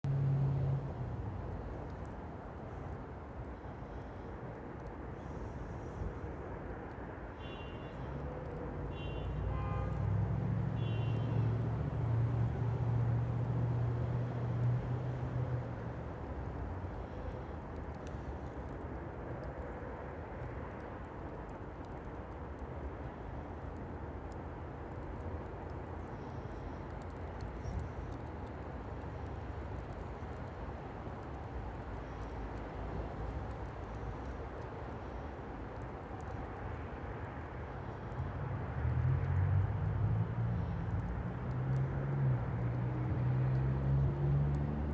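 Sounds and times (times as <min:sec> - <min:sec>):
outdoor background rumble: 0:00.0 - 0:44.9
wood fire crackling: 0:00.1 - 0:44.9.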